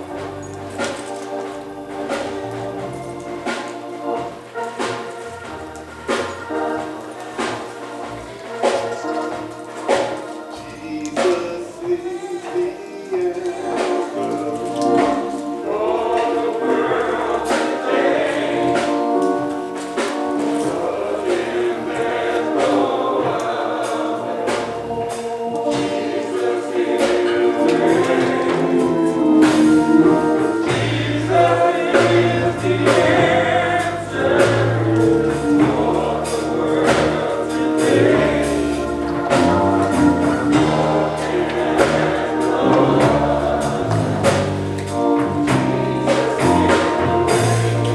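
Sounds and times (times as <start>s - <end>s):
choir singing gospel: 0.0s - 47.9s
band with bass: 27.9s - 47.9s.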